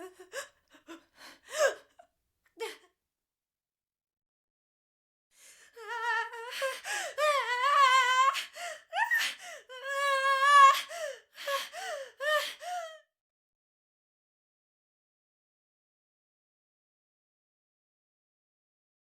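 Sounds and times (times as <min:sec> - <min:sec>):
woman moaning and gasping: 0:00.0 - 0:02.0, 0:05.4 - 0:13.0.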